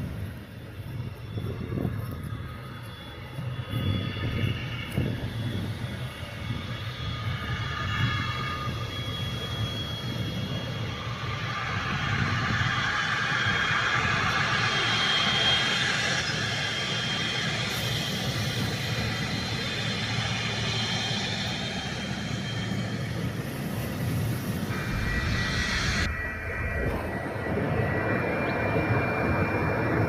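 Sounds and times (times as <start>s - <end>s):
jet engines rushing: 0.0s - 30.0s
thin high whine: 0.2s - 30.0s
low rumble: 21.5s - 30.0s.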